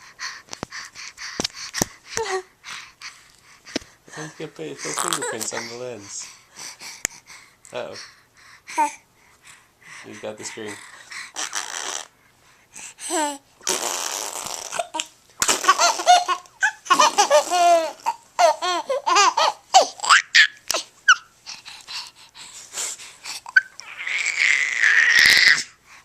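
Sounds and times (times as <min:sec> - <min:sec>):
baby laughing: 0:04.8 - 0:05.7, 0:13.1 - 0:21.3.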